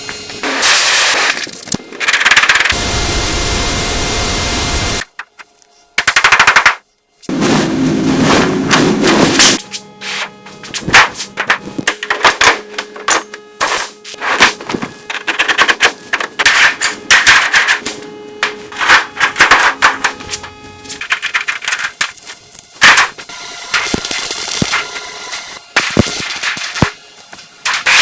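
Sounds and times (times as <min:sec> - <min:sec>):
sharp metallic knocks and clatter: 0:06.0 - 0:06.8, 0:10.7 - 0:24.9.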